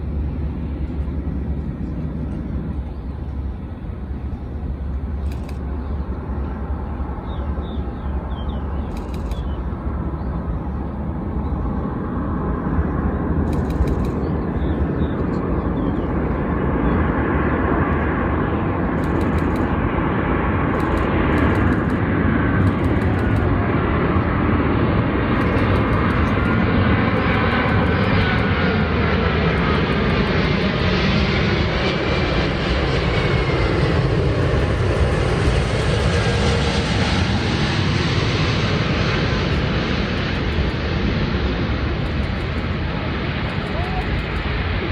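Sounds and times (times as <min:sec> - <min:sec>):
jet airliner passing overhead: 0:00.0 - 0:44.9.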